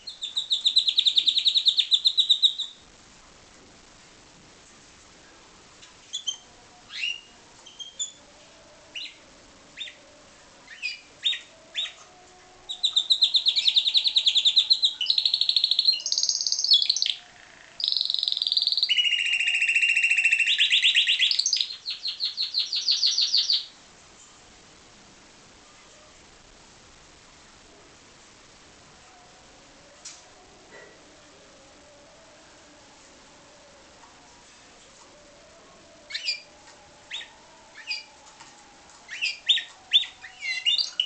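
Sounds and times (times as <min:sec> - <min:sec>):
canary singing trills: 0:00.0 - 0:02.8, 0:05.8 - 0:09.2, 0:09.8 - 0:10.0, 0:10.6 - 0:23.8, 0:36.0 - 0:41.0.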